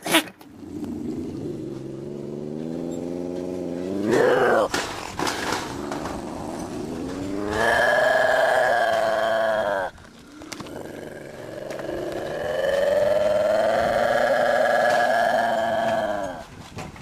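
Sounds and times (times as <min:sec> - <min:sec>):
animal moaning calls: 0:00.5 - 0:04.8, 0:05.5 - 0:16.5.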